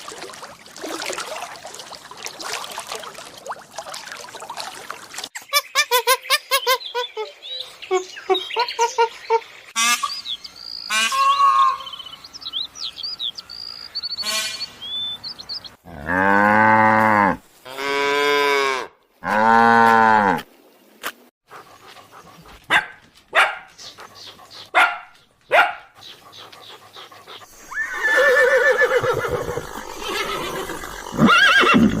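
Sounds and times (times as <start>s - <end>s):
cow mooing: 15.8s - 20.4s.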